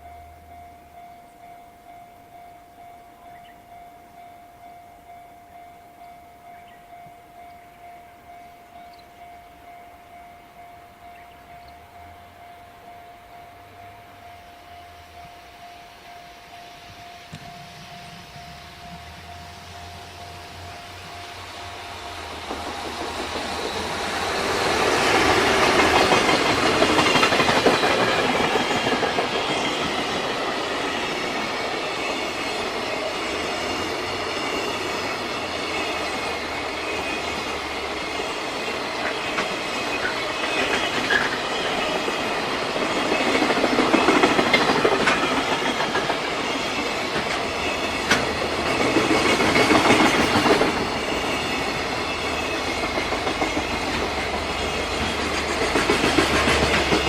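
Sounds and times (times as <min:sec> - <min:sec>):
train wheels clattering over rail joints: 0:18.8 - 0:57.0.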